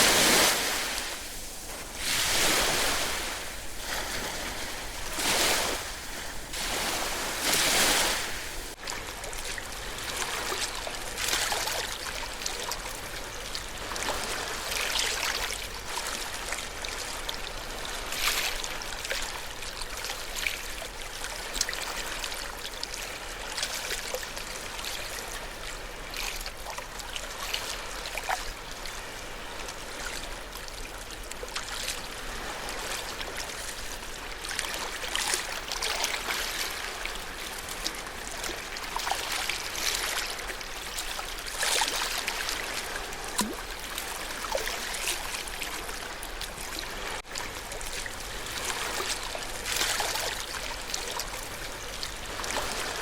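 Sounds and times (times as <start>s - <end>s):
ocean waves surging: 0.0s - 8.8s
water splashing and trickling: 0.0s - 53.0s.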